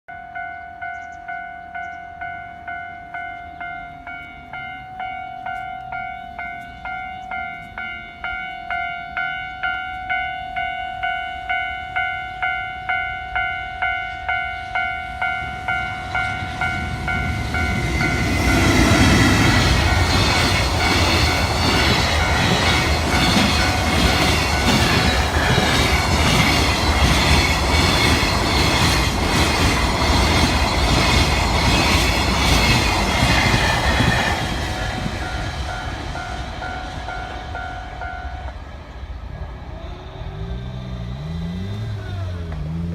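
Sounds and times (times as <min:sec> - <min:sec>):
level crossing bell ringing: 0:00.1 - 0:29.0
freight train rumbling: 0:00.3 - 0:42.9
wheels clattering over rail joints: 0:15.6 - 0:37.6.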